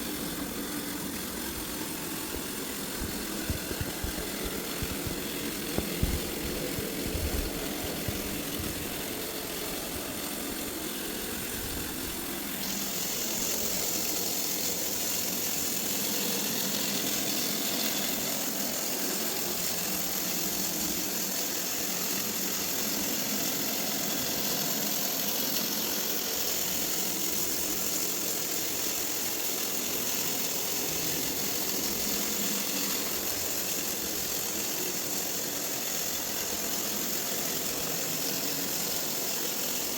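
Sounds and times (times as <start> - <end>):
robot vacuum motor whirring: 0.0 - 39.9.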